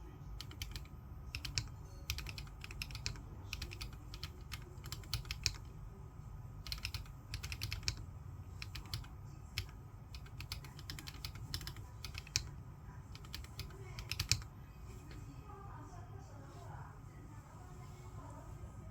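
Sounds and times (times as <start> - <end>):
steady low hum: 0.0 - 18.9
mechanical keyboard typing: 0.4 - 5.8, 6.6 - 15.2.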